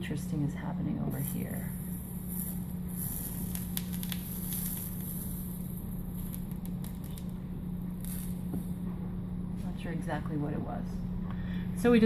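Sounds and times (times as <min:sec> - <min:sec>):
steady low hum: 0:00.0 - 0:12.0
flux sizzling and crackling: 0:01.1 - 0:08.9.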